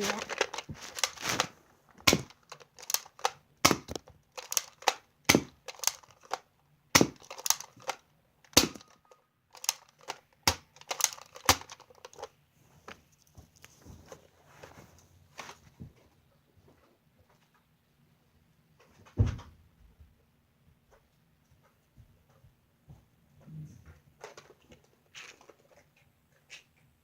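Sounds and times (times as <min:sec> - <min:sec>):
clicks and knocks of handling: 0:00.0 - 0:12.3, 0:23.9 - 0:26.9.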